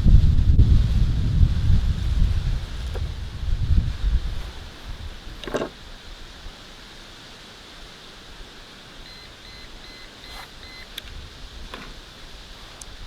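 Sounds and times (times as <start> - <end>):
steady hiss: 0.0 - 13.0
multimeter short beeps: 9.0 - 10.9.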